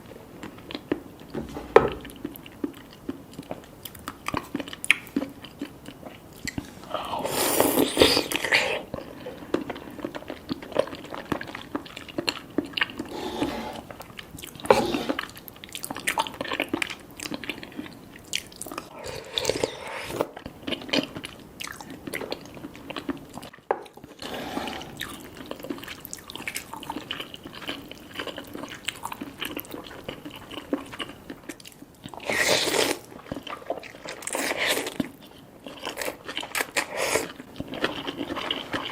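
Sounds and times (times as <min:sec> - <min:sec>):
wet chewing and biting: 0:13.8 - 0:24.2.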